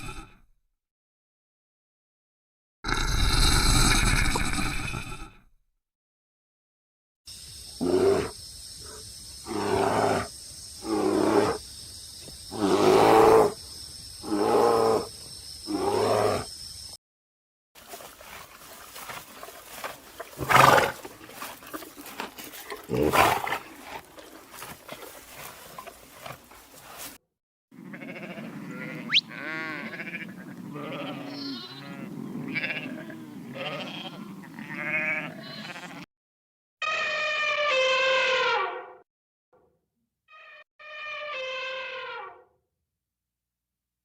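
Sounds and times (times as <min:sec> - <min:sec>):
young farm animals bleating: 0:27.8 - 0:36.1.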